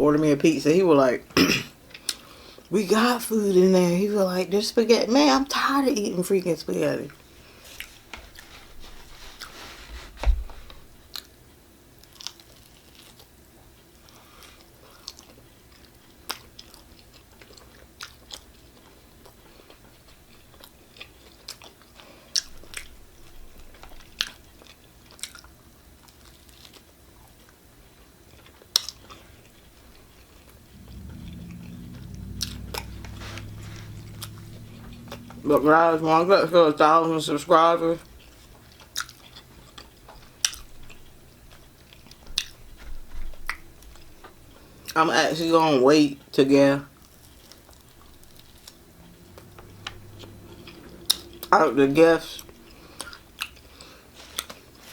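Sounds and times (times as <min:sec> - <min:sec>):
low hum: 0:29.9 - 0:38.4, 0:46.6 - 0:54.8
person chewing food: 0:38.2 - 0:41.0, 0:52.6 - 0:54.9.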